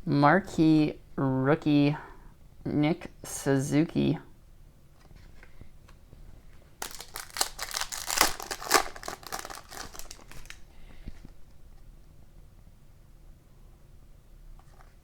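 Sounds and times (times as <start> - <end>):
foil wrapper crinkling and tearing: 6.8 - 10.7.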